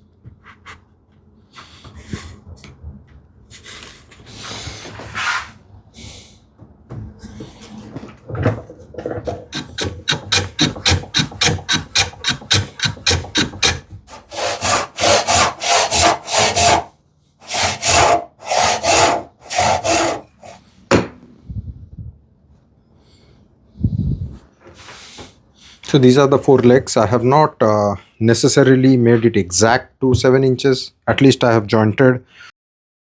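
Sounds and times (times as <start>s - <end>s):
hand saw cutting wood: 9.2s - 20.6s.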